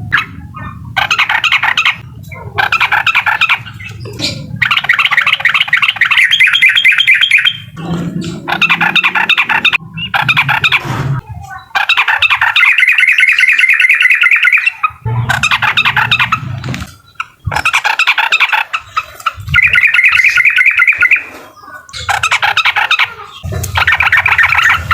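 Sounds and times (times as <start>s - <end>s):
bird chattering song: 0.0s - 24.9s.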